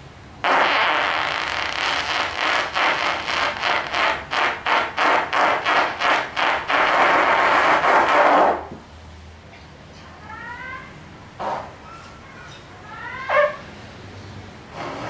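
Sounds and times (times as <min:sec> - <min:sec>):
airy fart noise: 0:00.4 - 0:08.8, 0:11.4 - 0:11.9, 0:14.7 - 0:15.0.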